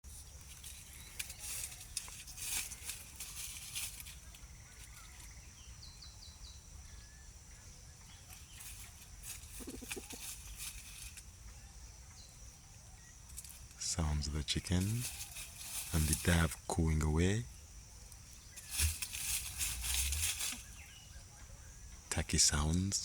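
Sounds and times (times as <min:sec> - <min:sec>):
clicks and rustles: 0:00.1 - 0:05.4, 0:08.3 - 0:11.3, 0:14.6 - 0:16.5, 0:18.1 - 0:20.8
high insect-like whine: 0:00.1 - 0:23.0
small bird chirps: 0:00.2 - 0:14.0, 0:17.5 - 0:23.0.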